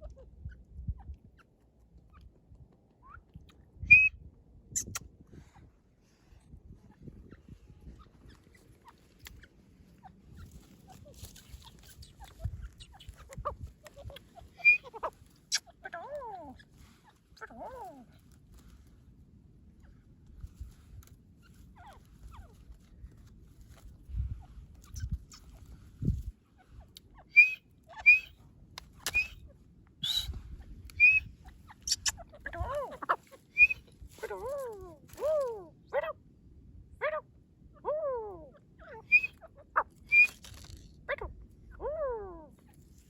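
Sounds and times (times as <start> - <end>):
francolin calling in whistled notes: 14.6 - 14.9, 27.2 - 28.4, 29.1 - 29.4, 30.0 - 30.3, 30.9 - 32.1, 33.5 - 33.9, 39.0 - 39.4, 40.0 - 40.4.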